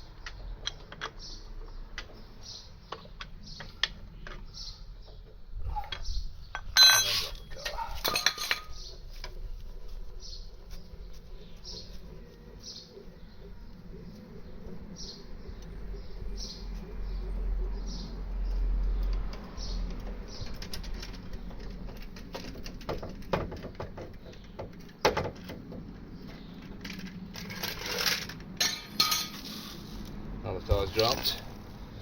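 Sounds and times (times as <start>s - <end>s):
jack squeaking: 5.7s - 9.0s
metallic clicks and clanks: 5.9s - 9.4s.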